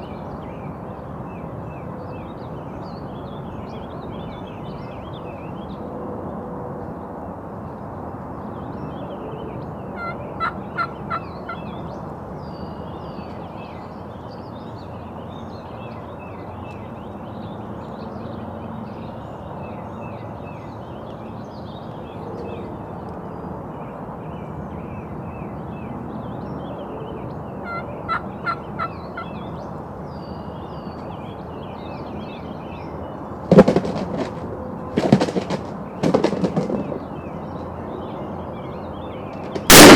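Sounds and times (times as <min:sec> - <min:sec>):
songbirds chirping: 0:00.0 - 0:39.9
turkey gobbling: 0:10.0 - 0:11.6, 0:27.6 - 0:29.3.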